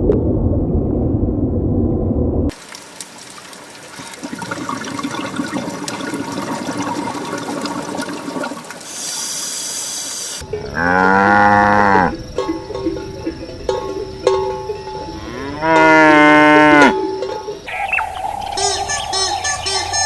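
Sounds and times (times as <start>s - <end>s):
cow mooing: 10.4s - 12.2s, 15.1s - 17.2s.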